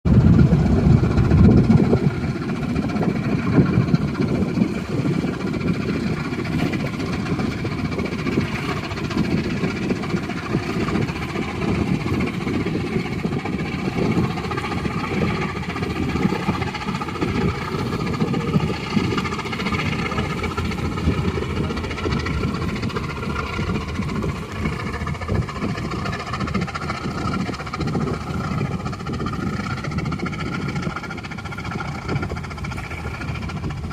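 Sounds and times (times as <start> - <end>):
low engine rumble: 0.0 - 33.9.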